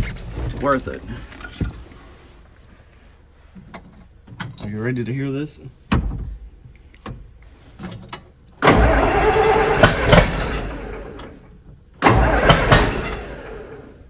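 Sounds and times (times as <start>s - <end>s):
diesel engine cranking and firing: 7.9s - 14.0s.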